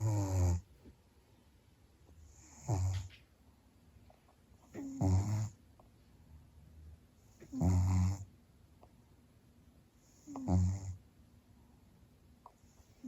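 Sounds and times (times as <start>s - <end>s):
cat snoring: 0.0s - 0.6s, 2.3s - 3.2s, 4.7s - 5.6s, 7.3s - 8.3s, 10.0s - 11.0s
quiet breathing: 9.9s - 13.0s.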